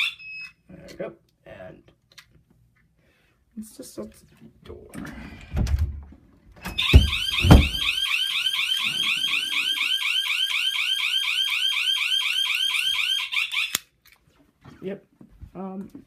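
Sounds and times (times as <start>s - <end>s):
heavy door thuds: 6.6s - 8.0s
warbling alarm siren: 6.7s - 13.8s.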